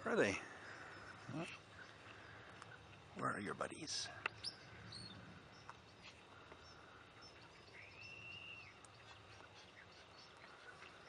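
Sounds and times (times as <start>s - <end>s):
distant bird chirps: 0.0s - 11.0s
whistled bird note: 7.7s - 8.8s.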